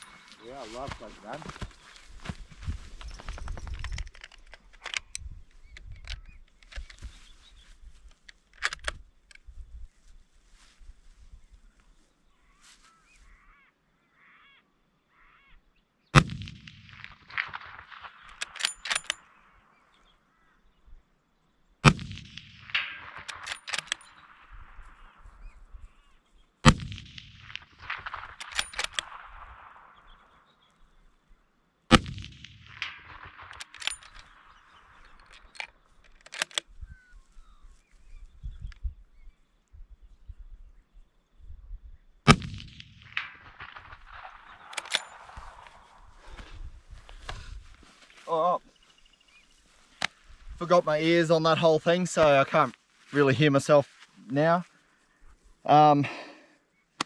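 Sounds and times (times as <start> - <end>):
sharp metallic clicks: 3.0 - 7.0, 8.0 - 9.4, 16.2 - 19.4, 21.8 - 24.4, 26.7 - 29.9, 31.9 - 36.7, 42.3 - 45.9
rifle shots with echo: 16.2 - 19.5, 21.8 - 25.2, 26.6 - 30.5, 31.9 - 35.3, 42.3 - 46.5
sharp clicks and knocks: 35.1 - 36.7.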